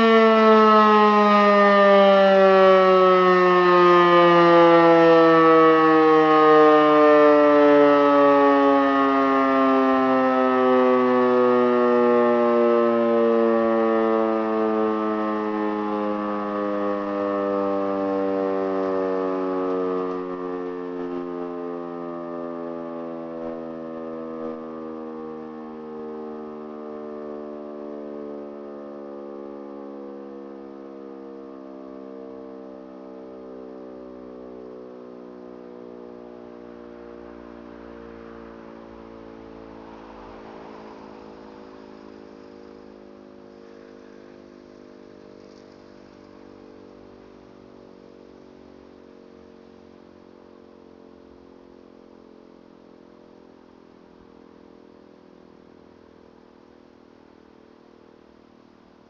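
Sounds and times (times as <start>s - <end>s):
motor siren winding down: 0.0s - 59.0s.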